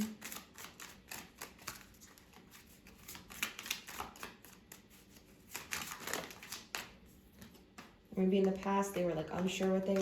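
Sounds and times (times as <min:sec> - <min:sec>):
cards being shuffled: 0:00.0 - 0:08.0.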